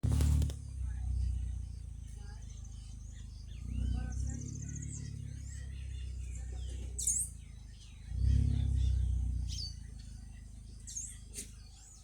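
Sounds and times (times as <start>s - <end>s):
low rumble: 0.0s - 1.8s
small birds chirping: 0.0s - 12.0s.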